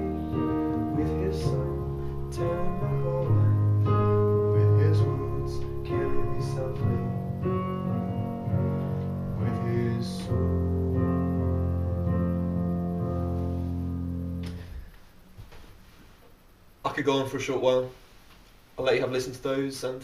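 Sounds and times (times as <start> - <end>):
deep bass line: 0.0 - 14.6
keyboard playing slow chords: 0.0 - 14.9.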